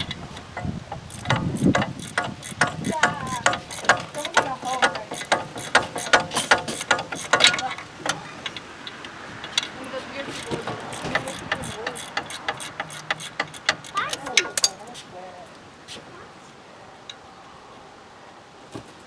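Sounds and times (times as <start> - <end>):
socket ratchet clicking: 0.0 - 9.7, 10.3 - 14.8.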